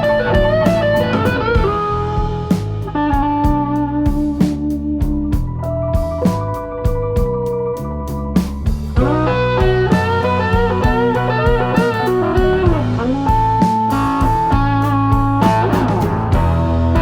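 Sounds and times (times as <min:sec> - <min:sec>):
blues electric guitar music: 0:00.0 - 0:17.0.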